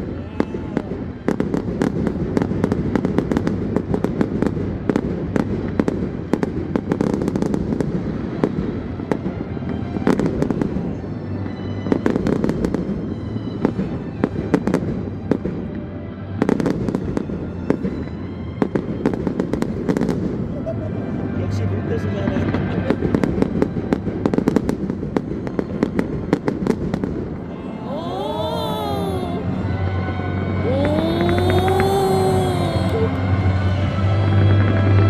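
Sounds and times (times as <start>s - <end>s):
fireworks bangs and crackles: 0.0s - 15.8s, 16.4s - 20.7s, 22.3s - 27.5s
music: 0.0s - 35.0s.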